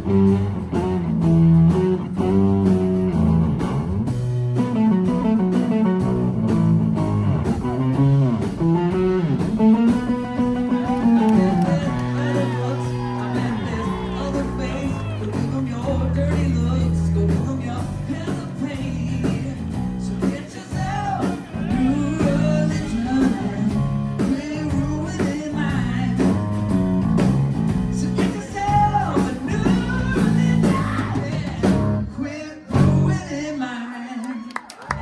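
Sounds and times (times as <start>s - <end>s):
live pop rock band: 0.0s - 35.0s
man singing: 9.7s - 26.6s, 27.8s - 34.6s.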